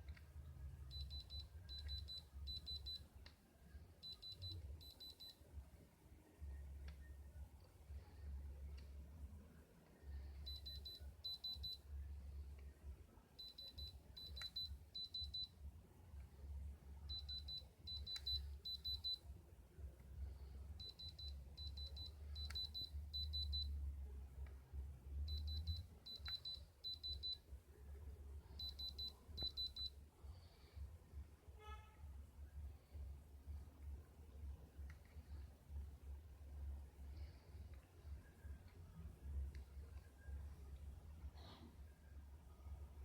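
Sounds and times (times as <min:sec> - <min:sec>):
rapid high-pitched beeps: 0:10.4 - 0:11.9, 0:17.1 - 0:19.3, 0:20.8 - 0:23.8, 0:25.3 - 0:27.4, 0:28.5 - 0:30.0.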